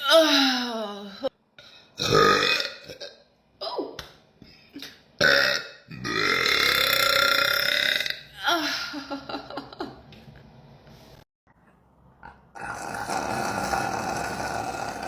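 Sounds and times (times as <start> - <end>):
woman burping: 12.6 - 15.0.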